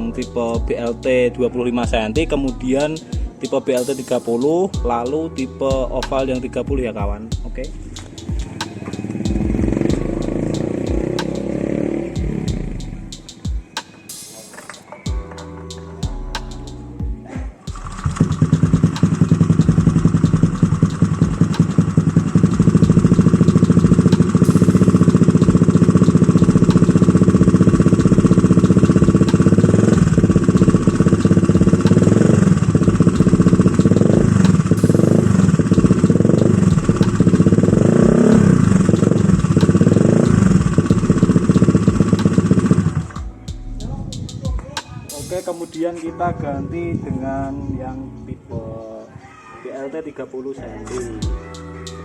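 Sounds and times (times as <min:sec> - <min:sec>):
motorcycle engine idling and revving: 0:05.7 - 0:13.1, 0:17.7 - 0:44.5.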